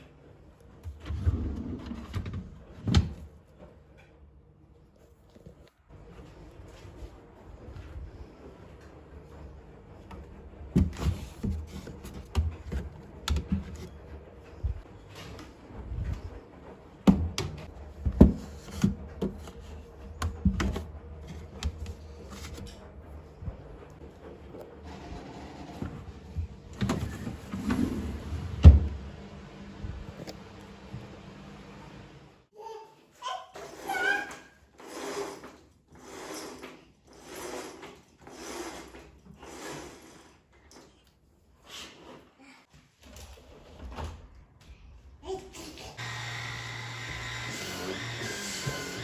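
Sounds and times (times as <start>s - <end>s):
household items knocking and clunking: 17.0s - 22.7s.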